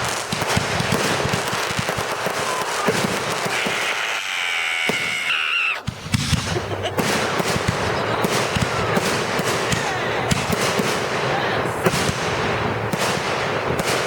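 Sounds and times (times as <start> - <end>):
fireworks crackling and popping: 0.0 - 14.0
firework whistle: 2.1 - 7.7.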